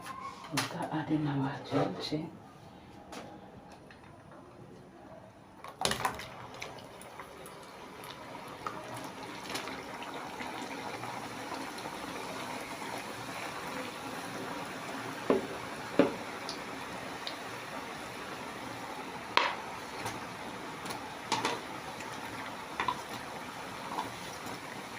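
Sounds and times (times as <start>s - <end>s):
dough deep-frying in hot oil: 5.6s - 24.9s.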